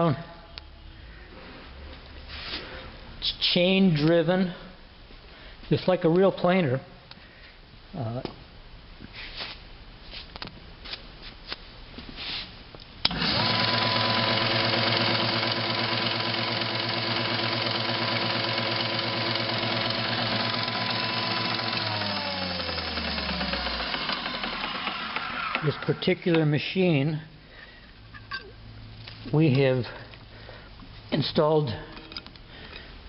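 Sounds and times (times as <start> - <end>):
planer motor humming and whirring: 13.1 - 25.9.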